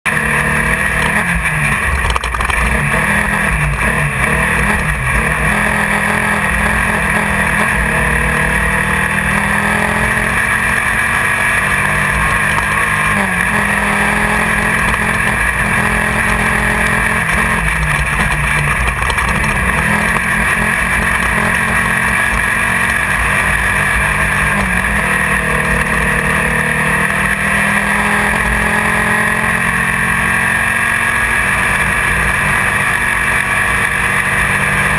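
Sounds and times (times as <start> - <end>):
race car engine running hard: 0.0 - 34.9
rattle: 0.9 - 5.3, 17.0 - 25.5.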